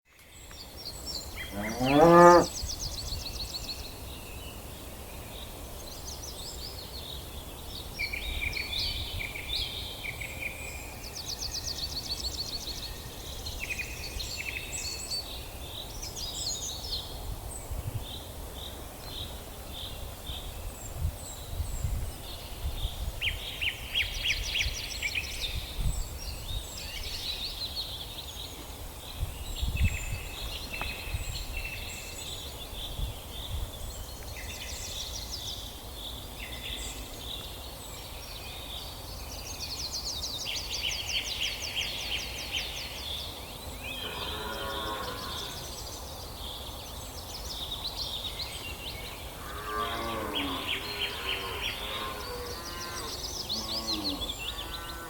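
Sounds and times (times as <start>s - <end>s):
small birds chirping and trilling: 0.4s - 4.4s, 22.2s - 55.0s.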